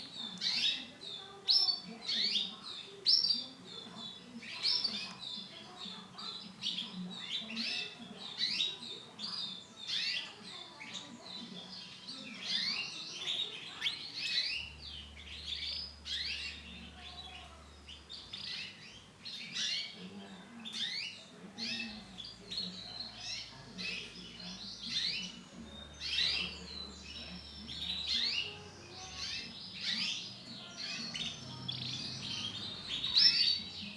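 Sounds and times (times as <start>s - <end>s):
canary chirping: 0.0s - 33.9s.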